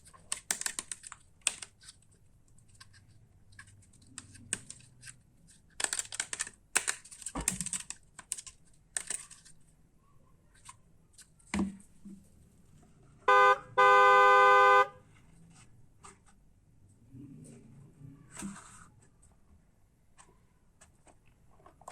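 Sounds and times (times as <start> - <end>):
plastic toy parts rattling: 0.0 - 9.7
toy truck electronic horn: 13.3 - 15.0.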